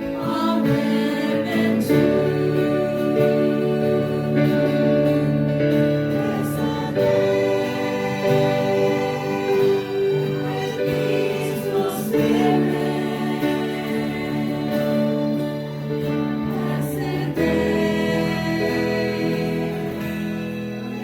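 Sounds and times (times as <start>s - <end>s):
choir singing a hymn: 0.0s - 21.0s
instrumental accompaniment: 0.0s - 21.0s.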